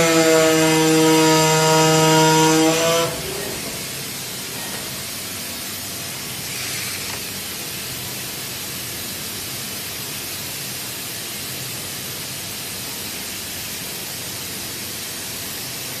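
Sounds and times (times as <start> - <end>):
cutting machine hiss: 0.0 - 7.7.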